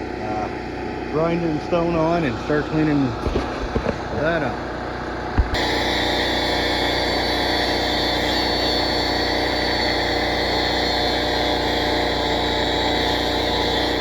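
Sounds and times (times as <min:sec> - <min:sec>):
angle grinder cutting metal: 0:05.4 - 0:14.0.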